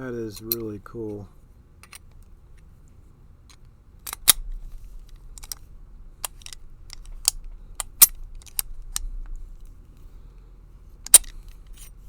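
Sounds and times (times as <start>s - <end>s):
padlock and key metal clicks: 0.4s - 0.7s, 1.8s - 2.1s, 3.5s - 9.1s, 11.0s - 11.9s.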